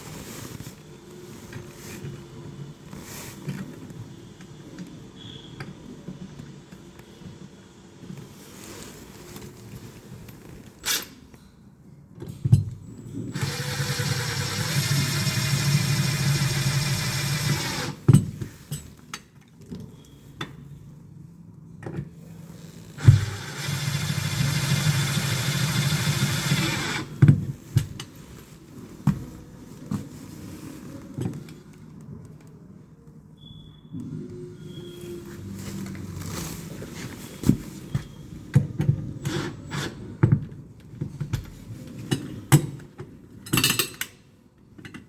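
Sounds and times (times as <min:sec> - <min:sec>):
electric drill running: 0:13.3 - 0:18.0, 0:23.0 - 0:27.1.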